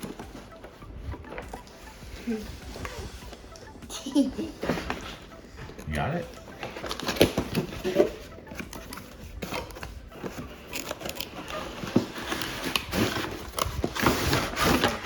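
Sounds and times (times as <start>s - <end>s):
cardboard packaging rustling: 4.5s - 15.0s.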